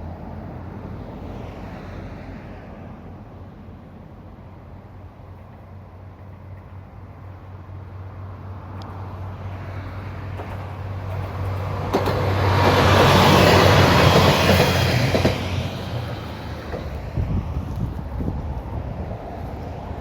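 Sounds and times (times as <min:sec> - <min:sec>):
diesel railcar engine drone: 0:00.0 - 0:20.0
wheels clicking over rail joints: 0:10.3 - 0:18.6.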